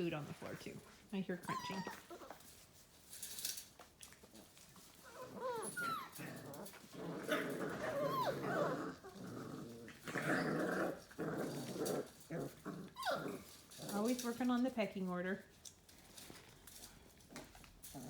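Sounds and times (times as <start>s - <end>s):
puppies growling: 1.4s - 2.6s, 4.1s - 14.4s, 17.2s - 18.0s
puppy whimpers and yips: 1.5s - 2.4s, 5.0s - 6.2s, 7.9s - 8.6s, 13.0s - 13.4s.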